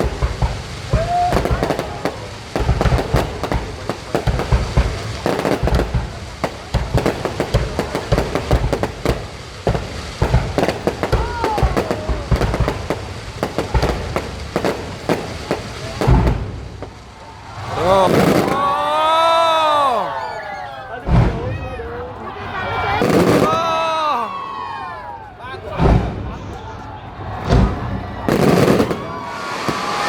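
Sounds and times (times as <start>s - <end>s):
fireworks bangs and booms: 0.0s - 30.0s.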